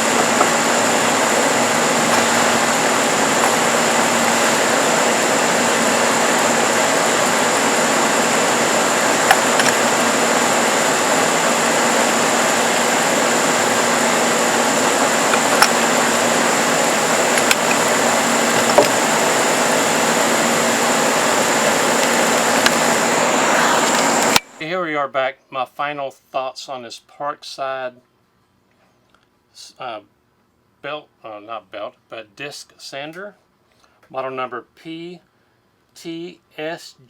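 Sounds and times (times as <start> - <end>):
disc sander motor whine: 0.0 - 24.6.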